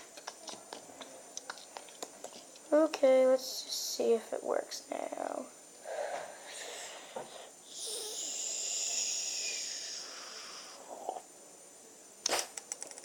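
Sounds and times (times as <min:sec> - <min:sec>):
breathy hiss sinking in pitch: 0:05.8 - 0:11.3.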